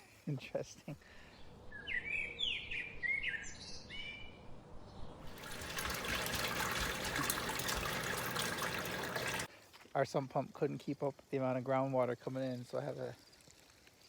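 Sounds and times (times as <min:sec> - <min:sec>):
songbirds chirping: 0:00.1 - 0:09.3
water gushing from hose: 0:05.3 - 0:09.5.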